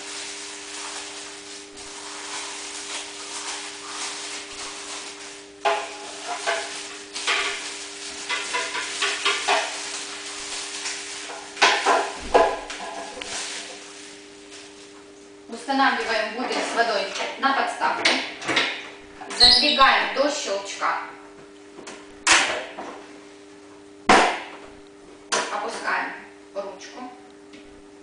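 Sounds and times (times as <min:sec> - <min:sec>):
plastic rustling and scraping: 0:00.0 - 0:15.4.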